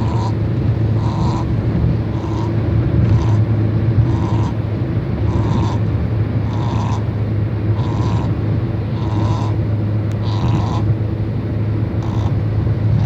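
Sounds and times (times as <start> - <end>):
dog snoring: 0.0 - 0.4, 1.0 - 1.5, 3.1 - 3.4, 5.3 - 5.8, 6.5 - 7.0, 7.8 - 8.4, 9.0 - 9.6, 10.2 - 10.9, 12.0 - 12.4
steady low rumble: 0.0 - 13.0.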